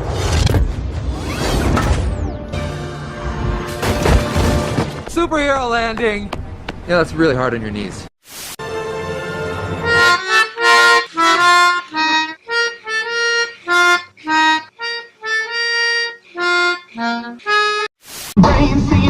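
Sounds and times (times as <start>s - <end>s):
instrumental melody: 8.6s - 17.9s.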